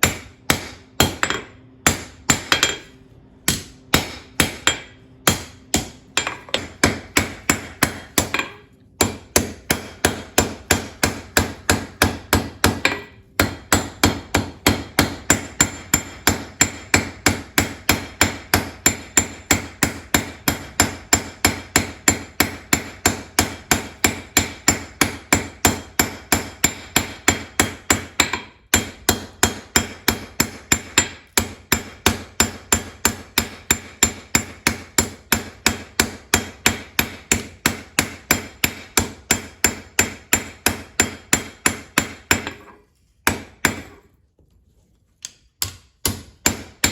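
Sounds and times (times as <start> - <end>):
hammer ringing on anvil: 0.0 - 2.9, 3.5 - 17.0.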